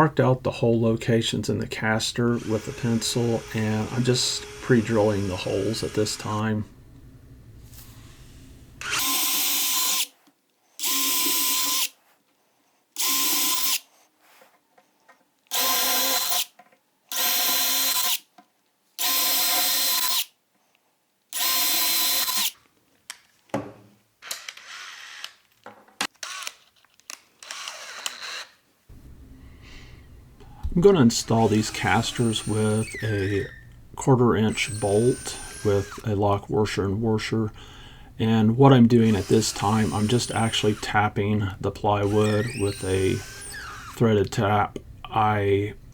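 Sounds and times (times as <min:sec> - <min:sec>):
power drill drilling into plywood: 0:02.4 - 0:06.1, 0:08.8 - 0:10.1, 0:10.8 - 0:11.9, 0:15.5 - 0:16.5, 0:17.1 - 0:18.2, 0:19.0 - 0:20.3, 0:21.4 - 0:22.6, 0:26.2 - 0:26.6, 0:27.4 - 0:28.6, 0:31.3 - 0:33.6, 0:34.5 - 0:36.0, 0:39.0 - 0:40.9, 0:42.0 - 0:44.0.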